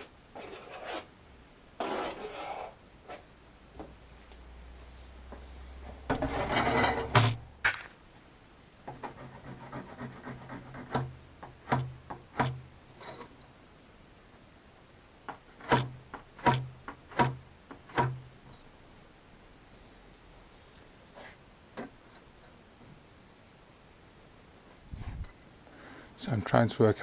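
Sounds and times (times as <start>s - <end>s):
rubbing and scraping on wood: 0.0s - 1.1s, 1.8s - 4.2s, 8.9s - 13.4s.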